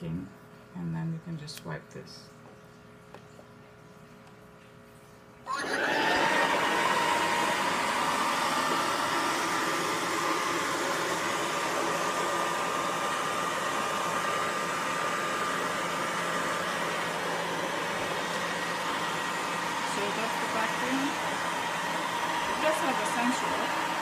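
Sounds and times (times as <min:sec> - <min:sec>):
robot vacuum cleaner running: 0:05.5 - 0:24.0.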